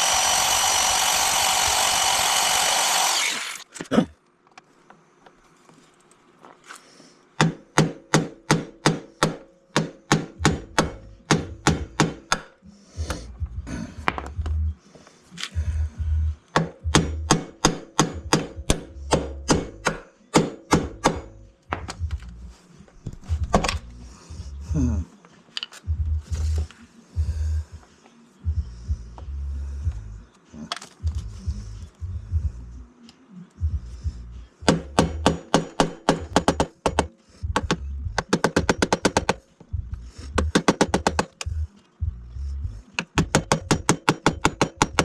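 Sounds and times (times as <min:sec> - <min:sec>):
hammer striking chisel: 0:07.4 - 0:12.6, 0:16.5 - 0:22.0, 0:34.6 - 0:39.4, 0:40.3 - 0:41.5, 0:43.0 - 0:45.0.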